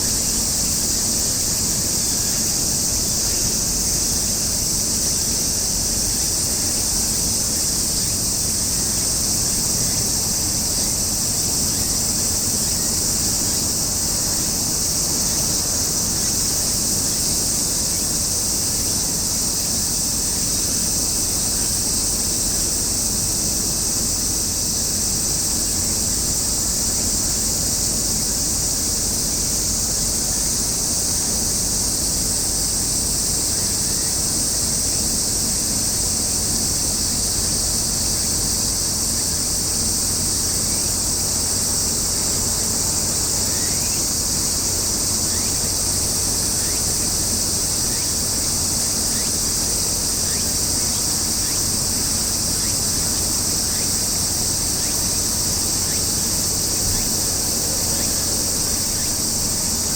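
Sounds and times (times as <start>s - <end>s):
high-pitched insect chorus: 0.0s - 59.9s.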